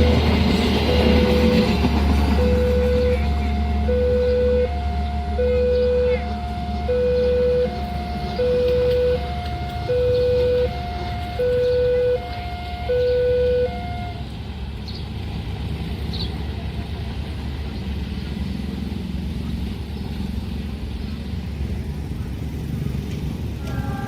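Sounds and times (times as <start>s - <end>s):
two-tone level crossing alarm: 0.0s - 14.2s
low rumble of road vehicles: 0.0s - 24.0s.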